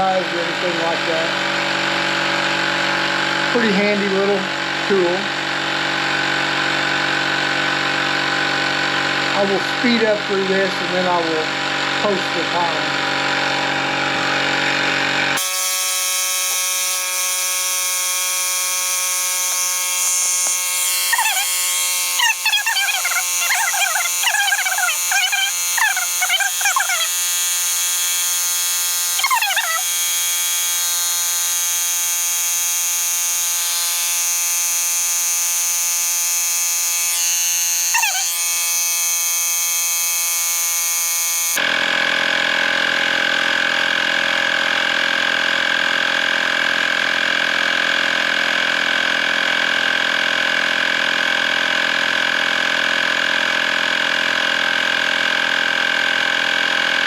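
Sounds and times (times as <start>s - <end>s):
high-pitched buzzing drone: 15.4s - 41.7s
short chirping squiggles: 21.0s - 27.2s, 29.2s - 29.9s, 37.9s - 38.3s.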